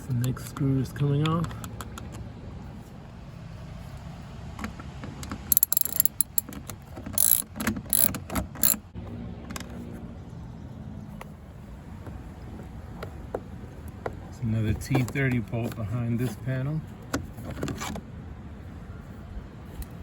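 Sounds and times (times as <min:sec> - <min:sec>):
hand ratchet clicking: 0:05.5 - 0:06.6, 0:07.2 - 0:08.8.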